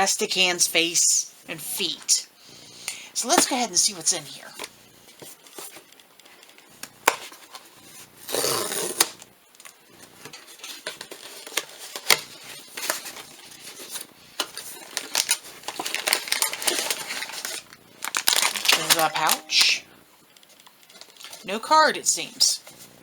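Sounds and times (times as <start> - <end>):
packaging rustling and tearing: 4.6 - 19.7, 20.4 - 21.4
cardboard box packaging clicks: 14.4 - 19.4.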